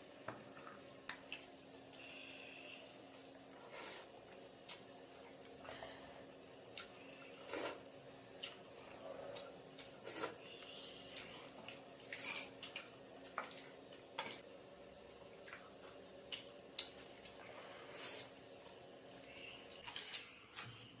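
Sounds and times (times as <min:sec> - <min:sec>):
faint steady hum: 0:00.0 - 0:21.0
wet squishing eating sounds: 0:06.6 - 0:14.5, 0:15.1 - 0:20.8.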